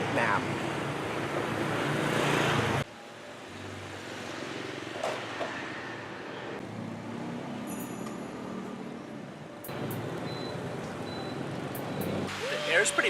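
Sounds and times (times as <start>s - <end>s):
street traffic: 0.0s - 13.0s.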